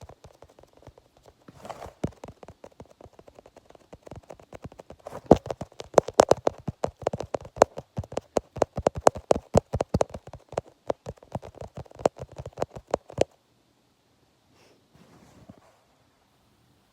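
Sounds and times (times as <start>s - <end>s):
rapid irregular clicking: 0.0s - 13.4s.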